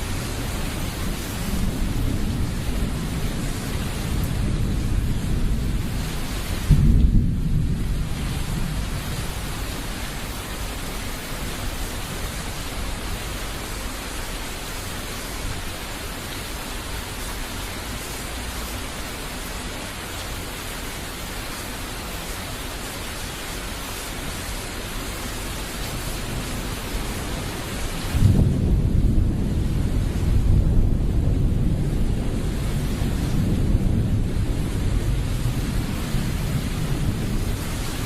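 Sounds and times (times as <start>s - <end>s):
thunder rumbling: 0.0s - 10.8s, 27.8s - 38.0s
heavy rain hiss: 0.0s - 38.0s.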